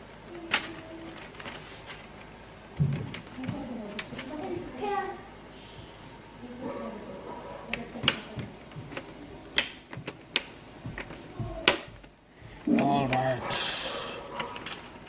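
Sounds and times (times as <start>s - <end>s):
clicks and taps of plastic parts: 7.7s - 13.2s.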